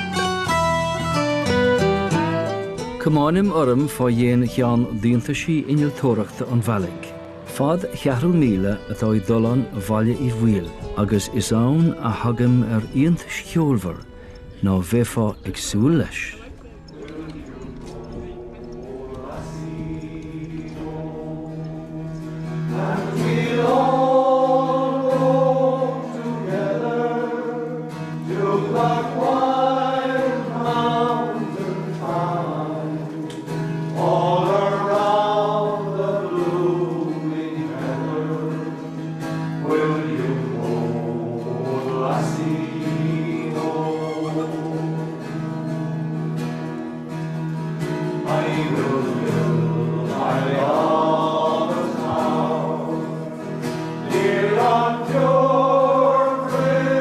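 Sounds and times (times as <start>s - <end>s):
choir singing slow song: 16.8s - 45.5s, 48.1s - 57.0s.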